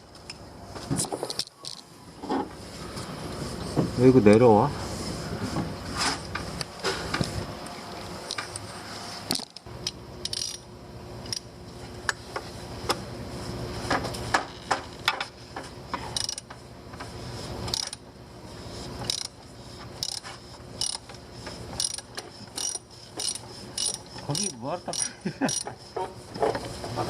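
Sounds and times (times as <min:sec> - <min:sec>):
ratchet wrench clicking: 0:09.3 - 0:11.5, 0:16.2 - 0:16.5, 0:17.7 - 0:18.0, 0:19.0 - 0:19.4, 0:20.0 - 0:21.2, 0:21.8 - 0:25.7.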